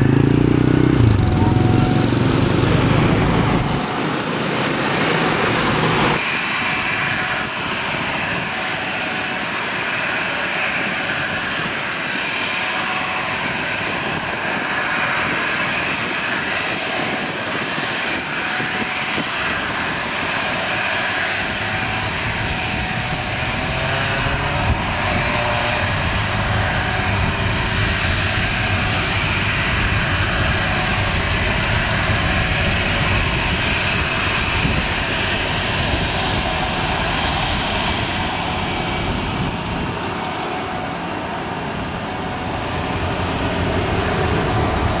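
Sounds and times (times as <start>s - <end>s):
airliner engines roaring: 0.0s - 45.0s.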